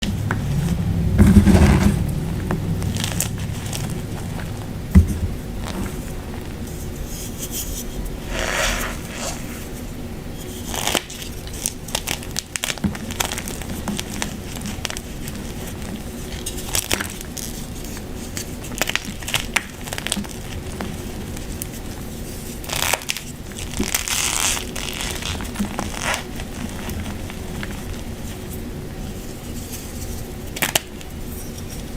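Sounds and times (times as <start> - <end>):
chalk crunching: 5.6 - 9.9
chalk crackling and squeaking: 6.8 - 9.8.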